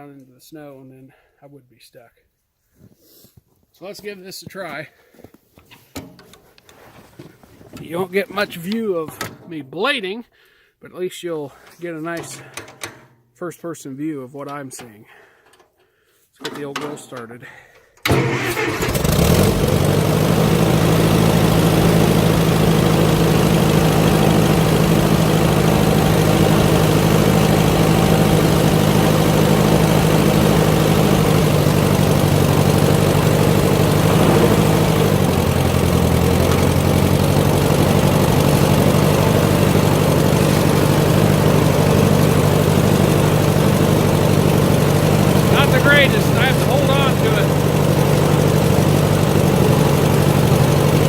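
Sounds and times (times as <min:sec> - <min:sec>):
tractor engine running: 0:18.1 - 0:51.0.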